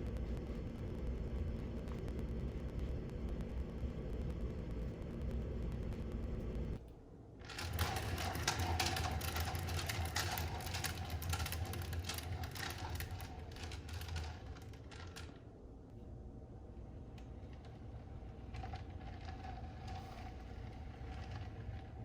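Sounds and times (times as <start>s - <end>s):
steady low hum: 0.0s - 22.0s
fast mechanical clicking: 7.4s - 15.5s.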